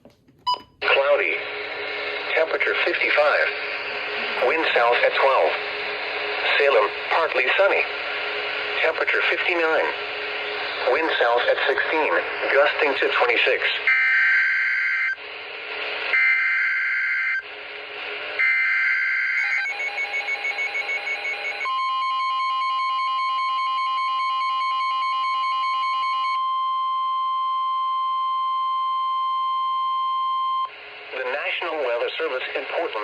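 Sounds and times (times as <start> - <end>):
steady warning alarm tone: 16.1 - 17.4, 18.4 - 30.7.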